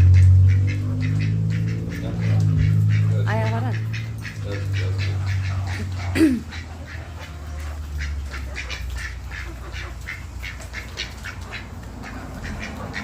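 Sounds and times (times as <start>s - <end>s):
chickens clucking: 0.0s - 13.0s.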